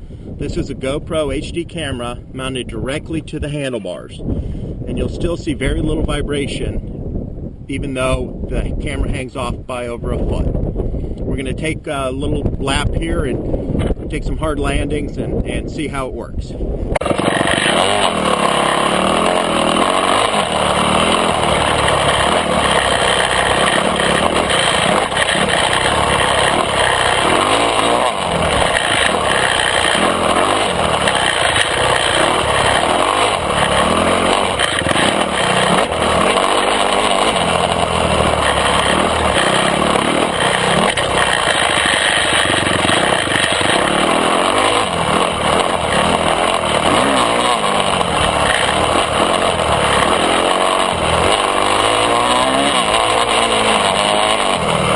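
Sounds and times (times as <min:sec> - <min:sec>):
dirt bike engine revving: 0:16.8 - 0:54.9.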